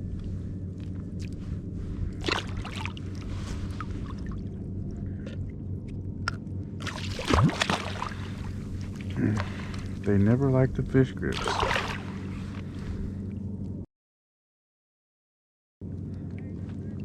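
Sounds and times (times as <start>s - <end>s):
steady low hum: 0.0s - 13.9s, 15.8s - 17.0s
water splashing and sloshing: 0.8s - 10.1s, 11.2s - 13.5s.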